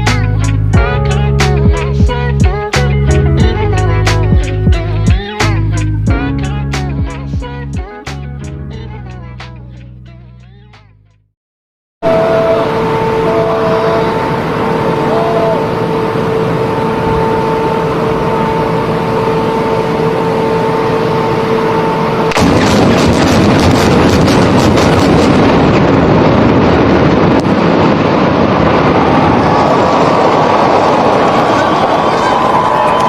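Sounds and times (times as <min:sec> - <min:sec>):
loud continuous rumble: 0:12.1 - 0:33.0
explosive charges cracking: 0:22.3 - 0:31.2.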